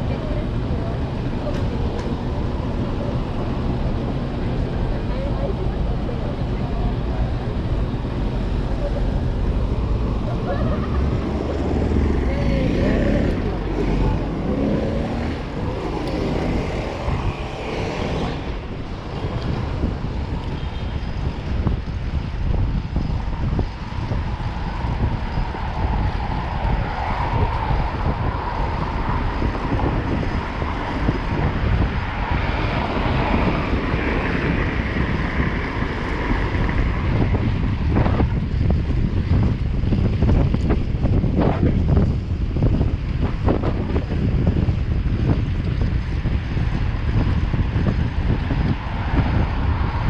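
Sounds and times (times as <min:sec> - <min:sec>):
city traffic noise: 0:00.0 - 0:50.0
wind rumbling on microphone: 0:00.0 - 0:50.0
vehicle passing: 0:09.3 - 0:19.9.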